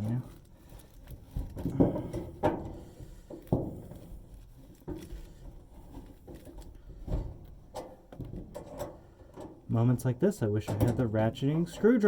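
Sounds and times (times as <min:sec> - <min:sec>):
screwdriver scraping and handling: 0:00.0 - 0:09.0.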